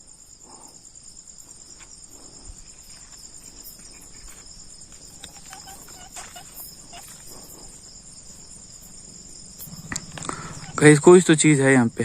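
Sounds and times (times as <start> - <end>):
crickets chirring: 0.0 - 12.0
faint clicks: 4.9 - 7.4, 9.6 - 10.8.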